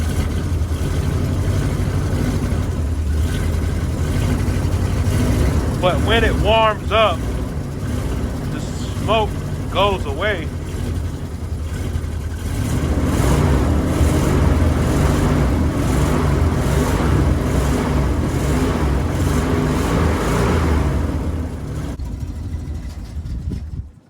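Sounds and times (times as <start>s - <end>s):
van engine running: 0.0s - 24.0s.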